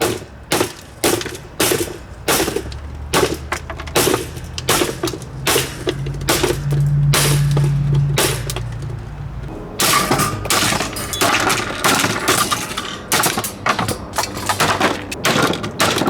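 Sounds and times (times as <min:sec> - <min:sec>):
hard blows smashing a fan: 0:00.0 - 0:16.0
low steady hum: 0:05.2 - 0:15.2.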